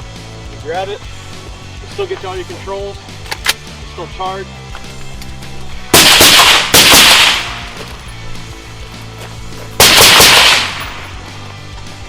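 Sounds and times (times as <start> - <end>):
echoing gunshots: 5.9 - 7.8, 9.8 - 11.1.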